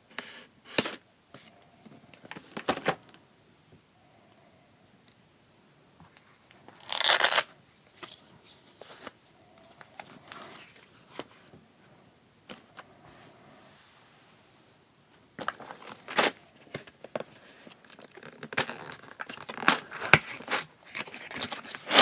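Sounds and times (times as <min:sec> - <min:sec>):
packaging tearing: 0:06.8 - 0:07.5, 0:21.7 - 0:22.0
rustling and handling clicks: 0:06.8 - 0:07.5.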